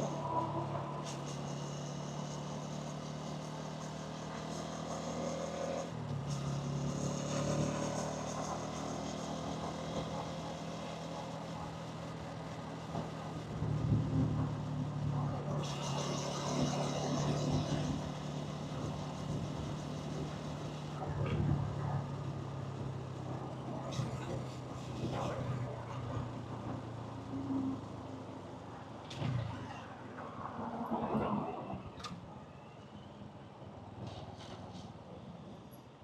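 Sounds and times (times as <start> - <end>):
motorcycle engine running: 0.0 - 25.8
city traffic: 0.0 - 36.0.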